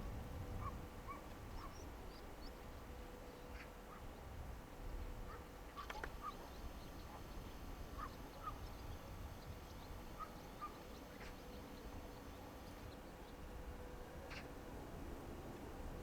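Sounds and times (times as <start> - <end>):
faint bird calls: 0.6 - 2.6, 5.3 - 13.4.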